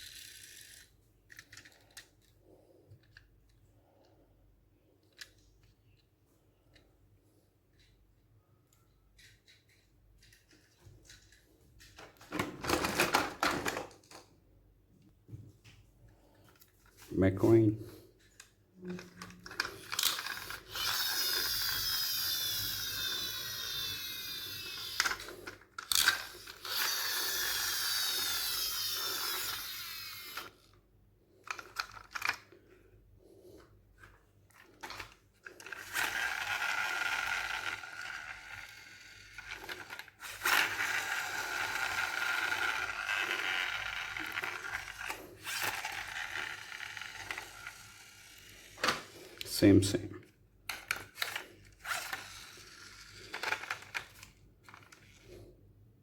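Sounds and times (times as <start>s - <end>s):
toy gear mechanism whirring: 0.0s - 2.4s, 9.1s - 11.9s, 18.2s - 30.8s, 31.4s - 32.6s, 33.5s - 49.8s, 50.7s - 55.4s.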